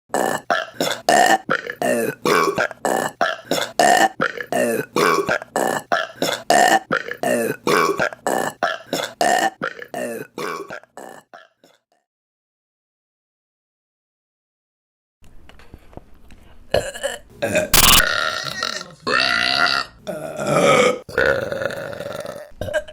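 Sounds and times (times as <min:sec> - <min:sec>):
women belching: 0:16.8 - 0:22.9.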